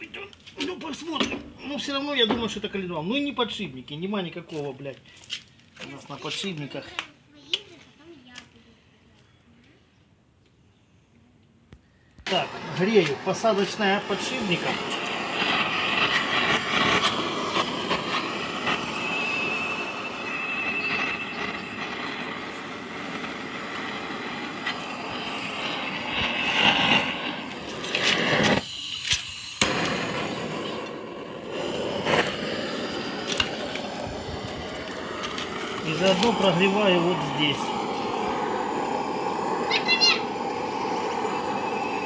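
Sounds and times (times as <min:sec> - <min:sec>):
heat tool blowing rush: 0:12.2 - 0:42.0.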